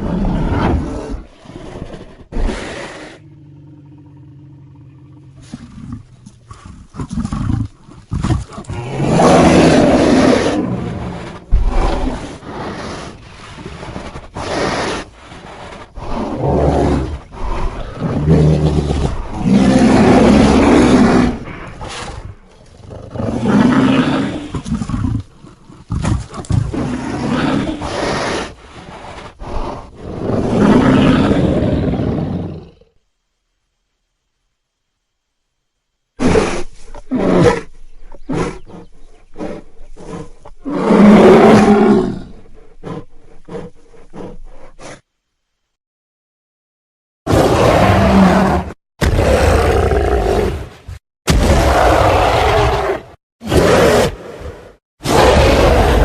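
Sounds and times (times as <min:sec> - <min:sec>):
monster roars: 0:47.3 - 0:50.7, 0:51.3 - 0:54.2, 0:55.0 - 0:56.0.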